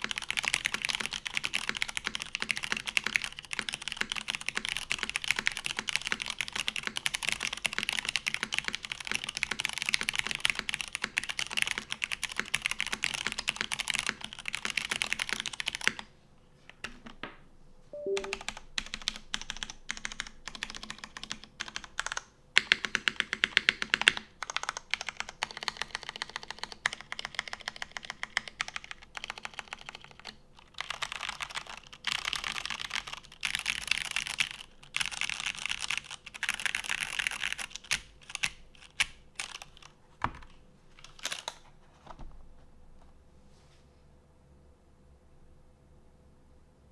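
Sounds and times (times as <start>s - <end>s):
mechanical keyboard typing: 0.0s - 16.0s, 18.0s - 41.6s.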